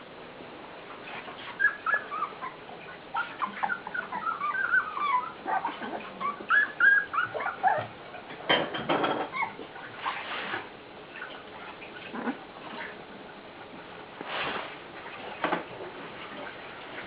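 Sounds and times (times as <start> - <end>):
puppies scuffling: 0.9 - 17.0
faint puppy squeaks: 1.1 - 8.3, 9.2 - 10.6.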